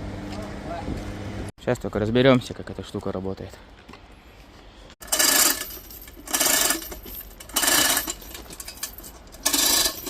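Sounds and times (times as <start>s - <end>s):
metal mechanism clattering: 5.0s - 10.0s.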